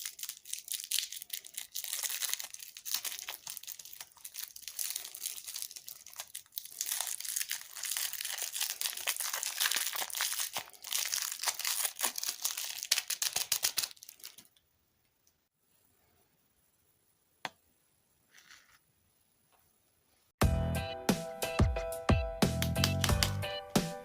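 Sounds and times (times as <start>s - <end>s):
plastic wrapper crinkling: 0.0s - 14.6s.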